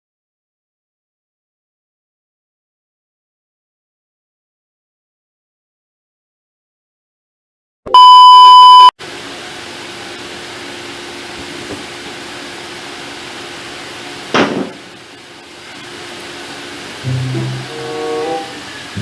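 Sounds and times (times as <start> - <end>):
electronic beep tone: 7.9 - 8.9
background hum and hiss: 8.6 - 19.0.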